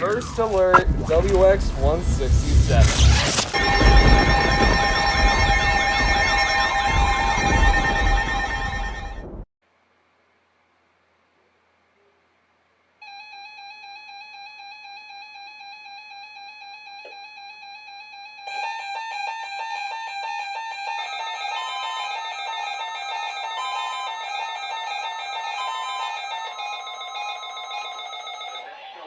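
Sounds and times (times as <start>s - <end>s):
rapid pulsing beeps: 0.0s - 9.3s.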